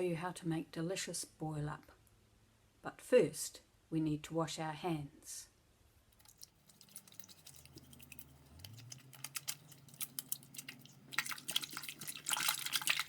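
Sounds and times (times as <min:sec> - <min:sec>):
clicks and drips: 0:06.2 - 0:13.0
running water splashing: 0:06.2 - 0:13.0
water pipes humming: 0:06.2 - 0:13.0.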